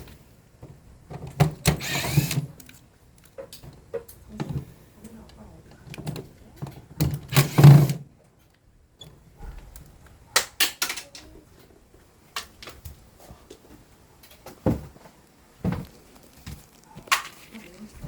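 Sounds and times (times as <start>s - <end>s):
air conditioner parts clicking: 0.0s - 11.7s, 12.3s - 13.6s.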